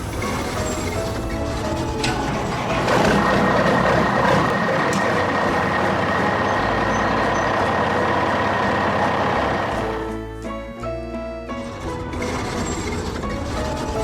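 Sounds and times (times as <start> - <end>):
high whine: 0.0 - 10.2
heavy machine engine rumbling: 0.0 - 14.0.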